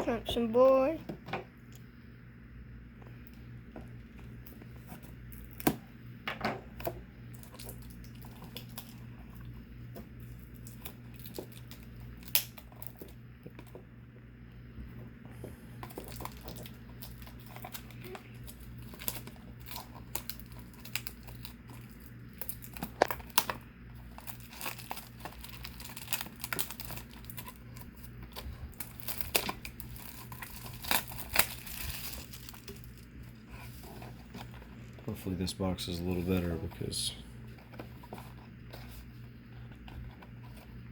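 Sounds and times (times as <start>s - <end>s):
low electrical hum: 0.0s - 40.9s
plastic wrapping tearing and crinkling: 7.3s - 13.6s, 15.8s - 35.2s.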